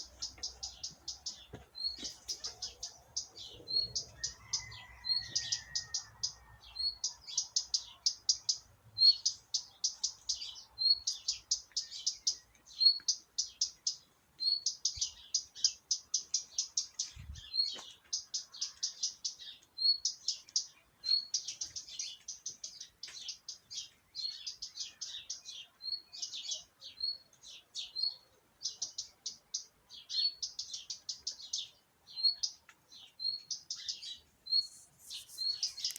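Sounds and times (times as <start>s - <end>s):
small birds chirping: 0.0s - 35.9s.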